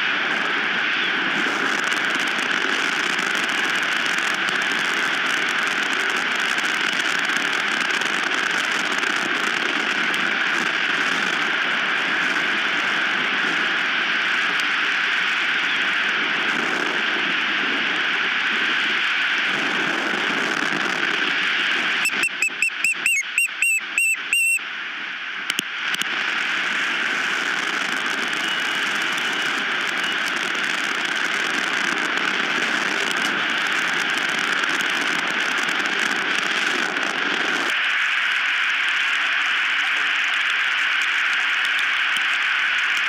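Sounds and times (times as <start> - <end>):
osprey chirping calls: 22.1 - 24.6.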